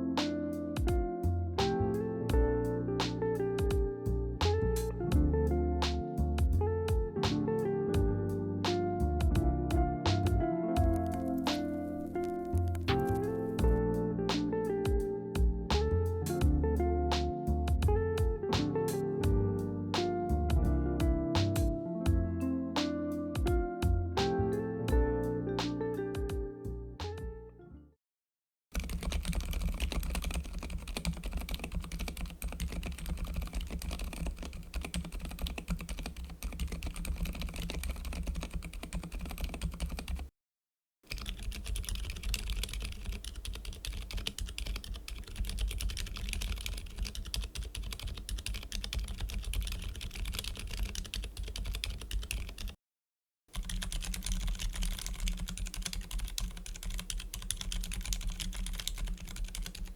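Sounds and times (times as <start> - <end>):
typing on mechanical keyboard: 10.8 - 13.8, 28.8 - 40.3, 41.1 - 52.8, 53.5 - 59.9.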